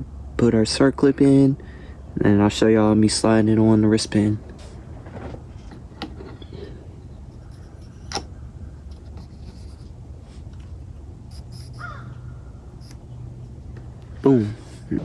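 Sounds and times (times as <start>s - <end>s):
low steady hum: 0.0s - 15.0s
metal parts scratching: 7.3s - 8.2s, 8.9s - 9.9s, 11.3s - 11.9s.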